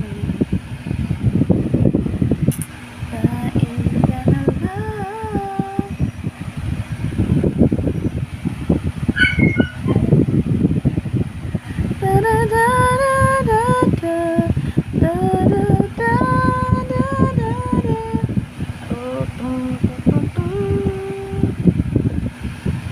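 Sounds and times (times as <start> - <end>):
woman singing slow melody: 0.0 - 0.6, 2.5 - 6.2, 11.8 - 21.8
low rumbling background noise: 0.0 - 22.9.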